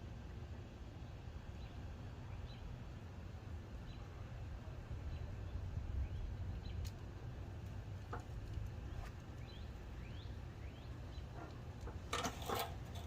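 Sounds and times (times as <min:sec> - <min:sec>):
steady low rumble: 0:00.0 - 0:12.1
small bird chirping: 0:08.8 - 0:11.4.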